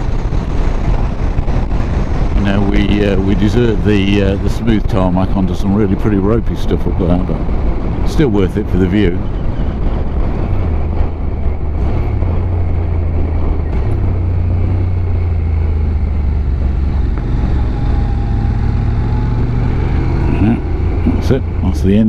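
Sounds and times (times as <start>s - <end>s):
motorcycle engine running: 0.0s - 4.9s, 9.2s - 22.0s
wind and road noise: 0.0s - 22.0s.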